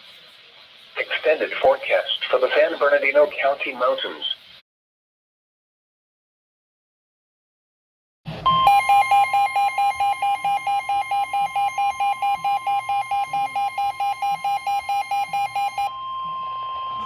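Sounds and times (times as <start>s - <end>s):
receiver alarm beeping: 8.5s - 17.0s
steady alarm tone: 8.5s - 17.0s.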